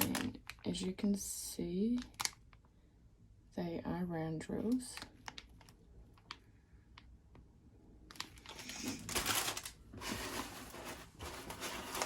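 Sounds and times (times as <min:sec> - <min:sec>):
plastic packaging crinkling: 0:00.0 - 0:01.1, 0:01.9 - 0:02.6, 0:04.7 - 0:06.4, 0:08.1 - 0:12.0.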